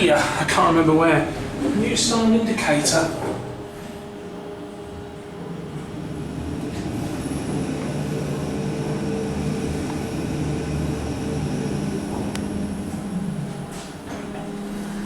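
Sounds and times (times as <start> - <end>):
lift travelling hum and rumble: 0.0 - 15.0
held low tones: 3.0 - 15.0.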